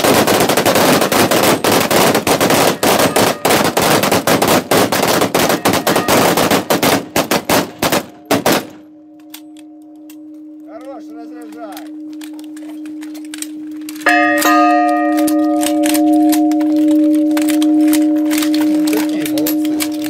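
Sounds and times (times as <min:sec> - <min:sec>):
rapid automatic gunfire: 0:00.0 - 0:08.8
bell ringing hum: 0:08.9 - 0:20.0.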